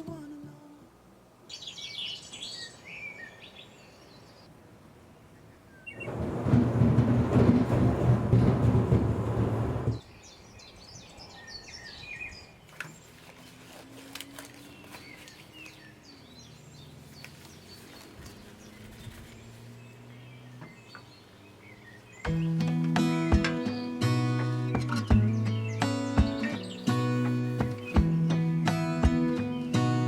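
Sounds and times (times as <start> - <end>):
birds chirping: 5.2 - 30.0
music: 22.3 - 30.0.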